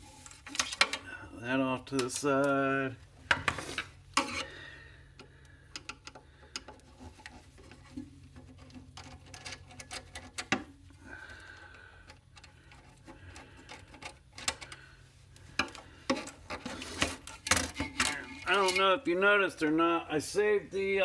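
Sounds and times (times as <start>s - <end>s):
tools and metal parts clicking: 8.7s - 10.7s.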